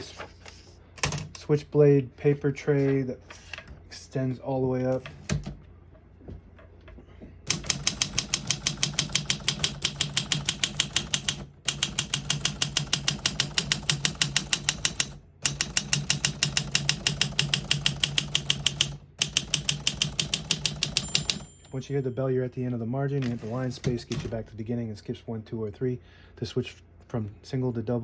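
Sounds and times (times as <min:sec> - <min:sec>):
manual typewriter typing: 0:07.5 - 0:21.8.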